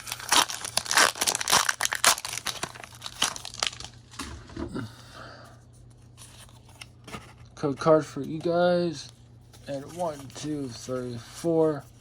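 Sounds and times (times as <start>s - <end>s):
foil wrapper crinkling and tearing: 0.0s - 4.2s.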